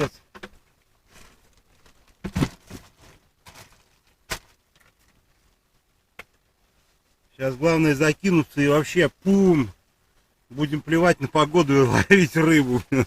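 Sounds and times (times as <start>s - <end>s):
fishing gear rustling: 0.5s - 5.7s.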